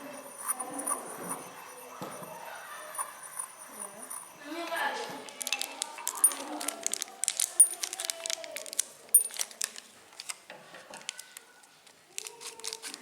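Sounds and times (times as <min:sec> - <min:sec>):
small hard objects clinking: 0:02.9 - 0:09.8.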